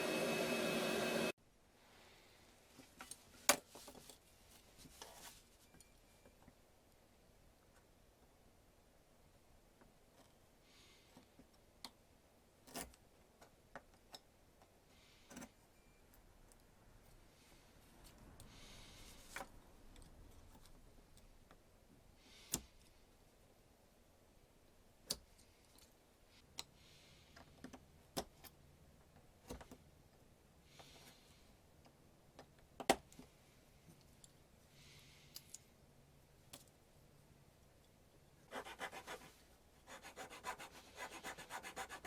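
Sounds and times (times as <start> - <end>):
soft rustles: 2.6 - 5.8.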